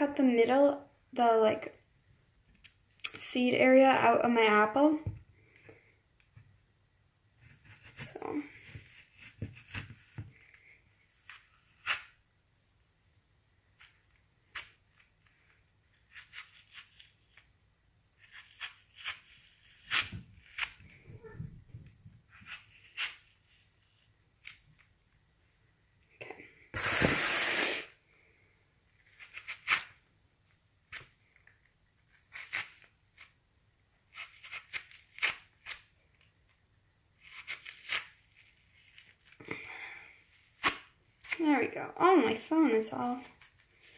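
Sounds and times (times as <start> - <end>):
knife scraping apple core: 7.5 - 10.2, 11.2 - 12.2, 15.9 - 17.5, 18.2 - 21.0, 22.3 - 24.5, 29.0 - 30.0, 32.1 - 33.4, 34.1 - 35.9, 37.2 - 39.1.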